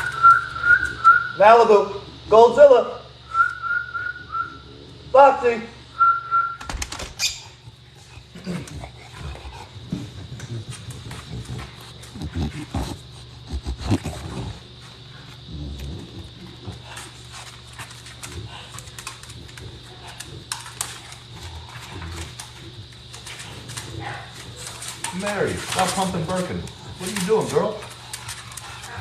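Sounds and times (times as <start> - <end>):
dogs growling: 7.5 - 29.0
clicks and rustles: 16.8 - 29.0.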